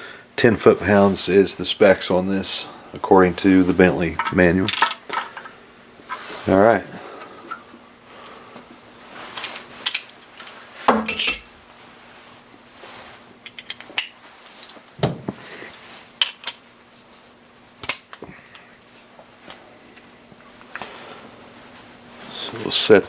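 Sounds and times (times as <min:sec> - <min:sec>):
metal hand tools clinking: 0:11.1 - 0:11.5.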